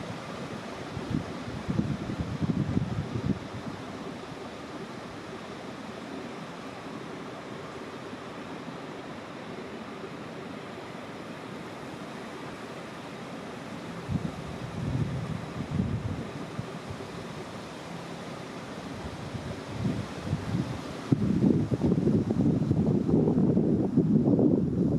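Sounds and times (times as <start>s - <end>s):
wind blowing: 0.0s - 4.2s, 13.8s - 24.9s
wind buffeting microphone: 0.9s - 3.8s, 14.0s - 17.2s, 19.0s - 24.9s.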